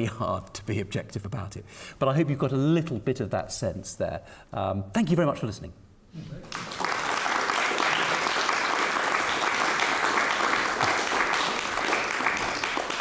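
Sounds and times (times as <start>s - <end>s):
audience applauding: 6.4s - 13.0s.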